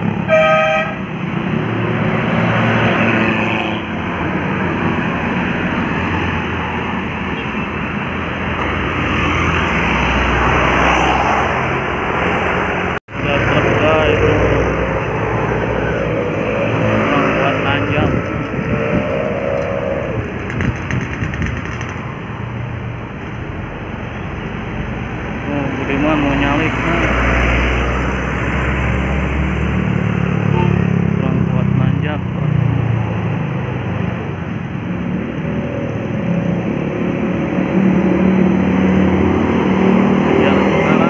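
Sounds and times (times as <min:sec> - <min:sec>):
quick rattling clicks: 0:20.5 - 0:22.1.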